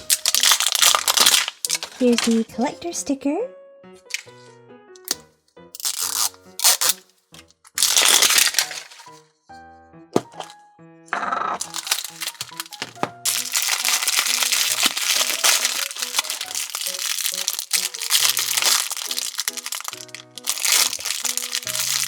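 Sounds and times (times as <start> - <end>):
plastic wrapping crinkling: 0.0 - 2.5, 4.1 - 4.5, 5.8 - 9.2, 11.6 - 22.0
light background music: 0.0 - 22.0.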